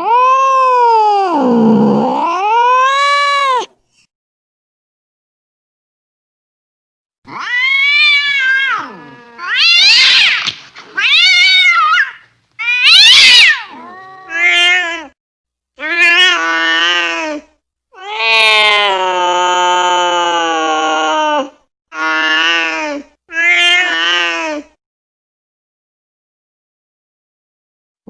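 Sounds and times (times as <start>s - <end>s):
cat yowling: 0.0s - 3.7s, 7.3s - 15.2s, 15.8s - 17.4s, 18.0s - 24.6s.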